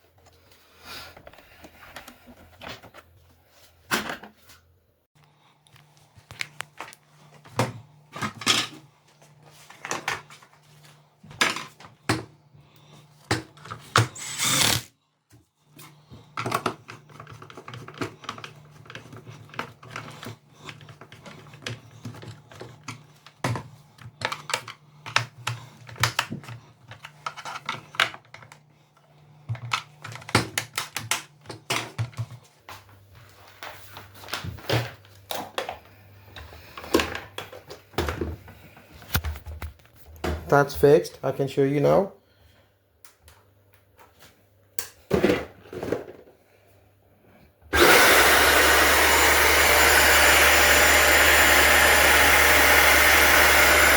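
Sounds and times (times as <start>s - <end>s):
plastic parts clicking and rattling: 16.4s - 28.6s, 29.5s - 32.2s.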